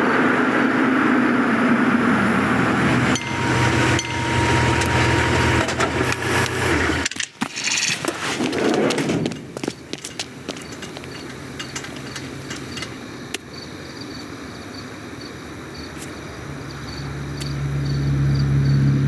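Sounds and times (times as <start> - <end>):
vehicle engine approaching: 0.1 - 7.3, 16.4 - 19.0
low steady hum: 1.0 - 8.2
crickets chirping: 1.1 - 19.0.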